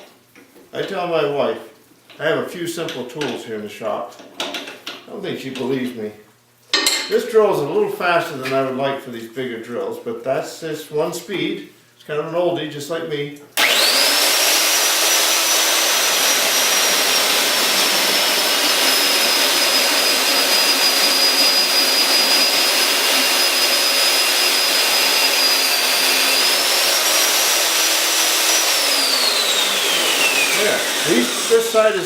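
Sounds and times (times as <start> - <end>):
drill motor whining: 13.6 - 32.0.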